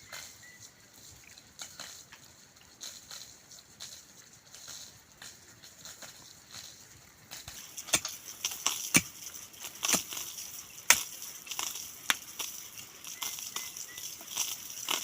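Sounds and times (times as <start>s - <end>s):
hand tool chopping: 7.5s - 10.3s, 10.9s - 11.2s.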